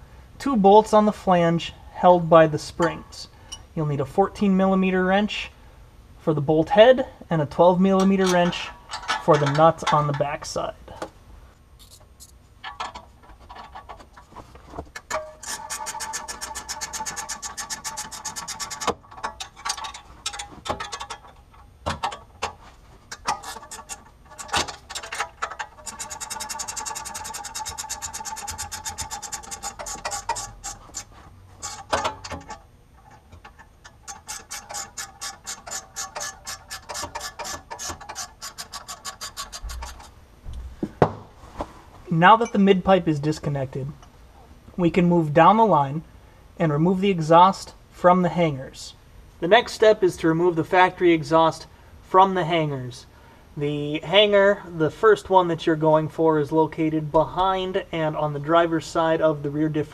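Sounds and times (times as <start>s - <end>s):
ratcheting wrench clicking: 15.0s - 40.1s.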